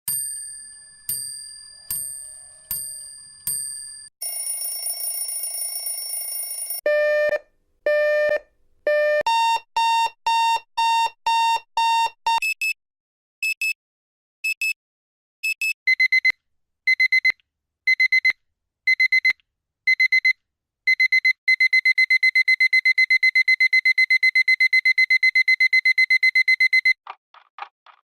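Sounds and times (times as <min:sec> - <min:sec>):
alarm clock bell ringing: 0:00.1 - 0:06.8.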